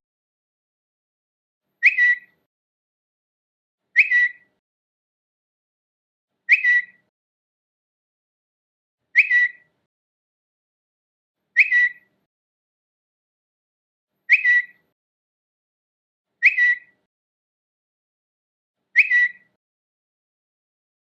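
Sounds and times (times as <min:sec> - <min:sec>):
high bird-like notification chirp: 0:01.8 - 0:02.3, 0:04.0 - 0:04.5, 0:06.5 - 0:07.1, 0:09.2 - 0:09.7, 0:11.6 - 0:12.1, 0:14.3 - 0:14.8, 0:16.4 - 0:17.0, 0:19.0 - 0:19.5.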